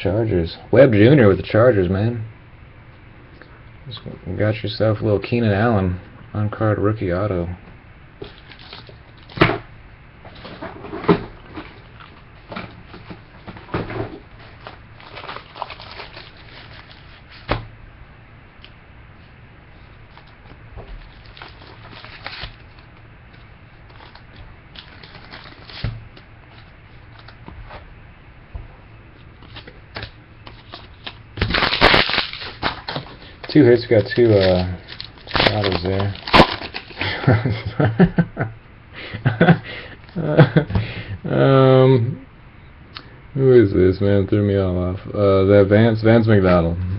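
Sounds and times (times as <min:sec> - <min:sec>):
packaging rustling: 0:08.2 - 0:09.4, 0:10.3 - 0:17.6, 0:20.1 - 0:23.0, 0:23.8 - 0:27.5, 0:29.4 - 0:37.1.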